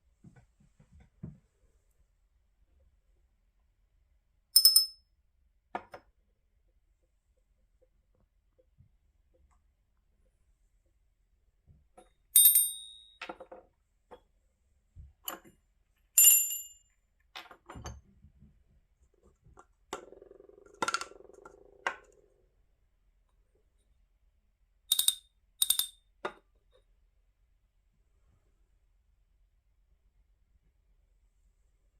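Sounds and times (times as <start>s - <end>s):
small metal bells clinking: 4.6s - 5.0s, 12.4s - 13.2s, 16.2s - 16.8s.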